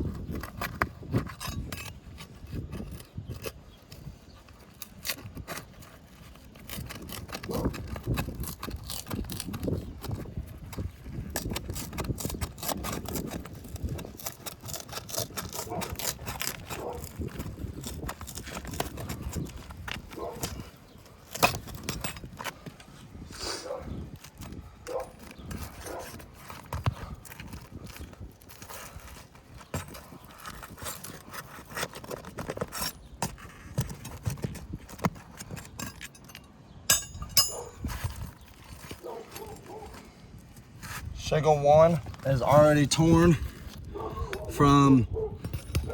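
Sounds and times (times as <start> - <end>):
tools prying under shingles: 0.0 - 41.1, 42.0 - 45.9
sharp ringing metal clinks: 36.9 - 37.8.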